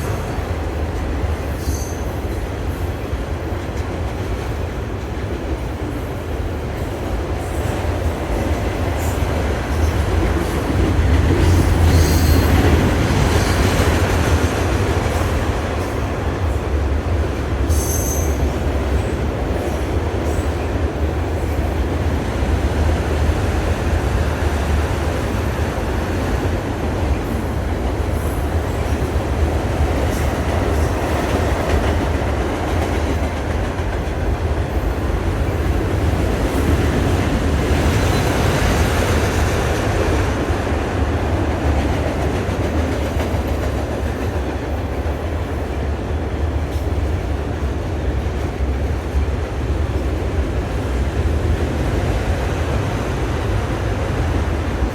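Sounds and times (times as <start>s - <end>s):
train wheels rumbling on rail: 0.0s - 54.9s
train wheels squealing: 1.4s - 3.0s, 11.4s - 14.0s, 17.7s - 20.6s, 37.8s - 39.2s.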